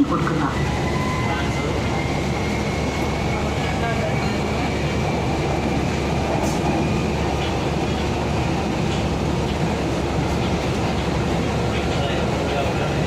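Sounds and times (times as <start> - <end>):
train rumble inside carriage: 0.0 - 13.0.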